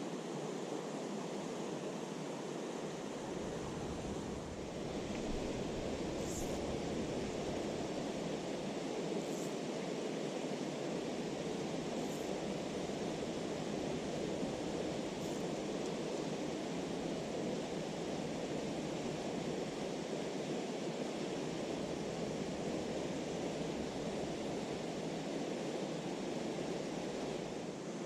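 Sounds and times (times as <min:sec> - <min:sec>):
stream rushing: 0:00.0 - 0:28.0.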